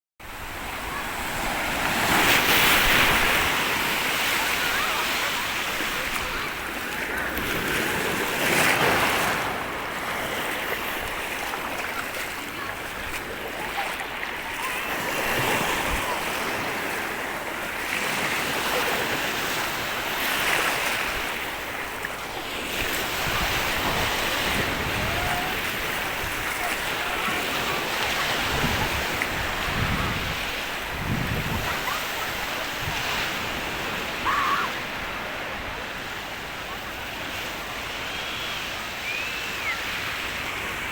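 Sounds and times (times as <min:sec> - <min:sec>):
sea waves washing ashore: 0:00.2 - 0:40.9
wind buffeting microphone: 0:22.8 - 0:33.7.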